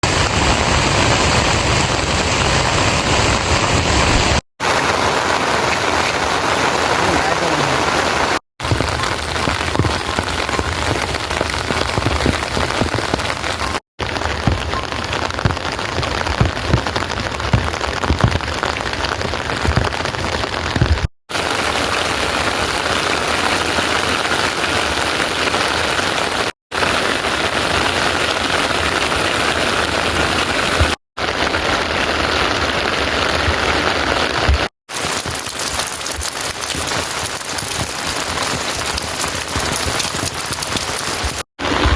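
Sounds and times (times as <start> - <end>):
steady rain falling: 0.0 - 41.9
low thuds: 14.1 - 18.8.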